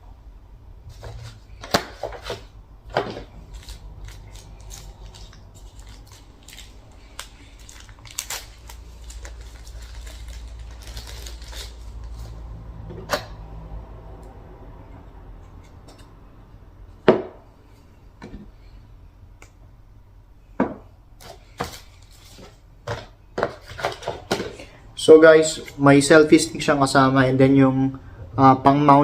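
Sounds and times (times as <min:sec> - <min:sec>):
packaging rustling: 0:01.0 - 0:12.4.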